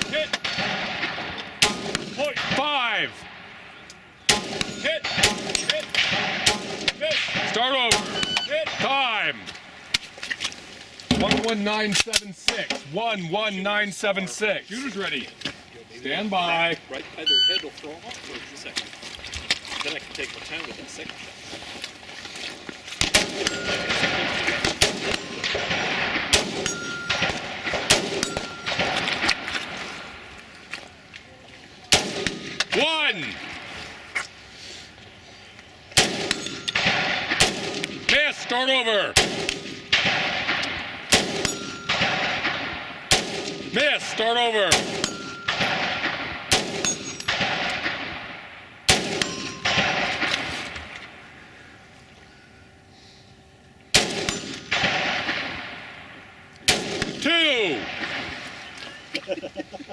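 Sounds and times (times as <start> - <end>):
rifle shots: 0.0 - 9.3, 23.0 - 30.3, 31.9 - 33.7, 36.0 - 51.3, 53.9 - 58.6
steel plates ringing: 23.4 - 24.3, 26.5 - 29.2, 36.3 - 36.9, 41.4 - 42.4, 44.9 - 46.1, 46.8 - 47.4, 49.2 - 50.1.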